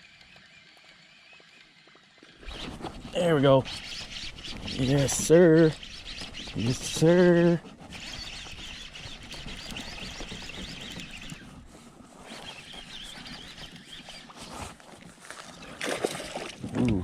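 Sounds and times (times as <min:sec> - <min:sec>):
birds chirping: 0:02.4 - 0:11.5, 0:12.3 - 0:14.8.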